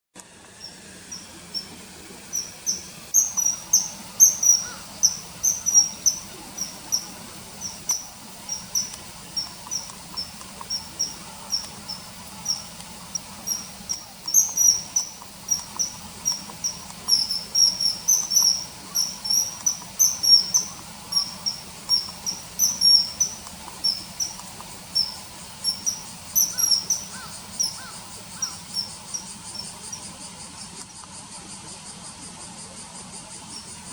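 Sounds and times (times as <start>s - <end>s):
faint insect trill: 0.2s - 33.9s
bird high-pitched piping calls: 0.5s - 30.8s.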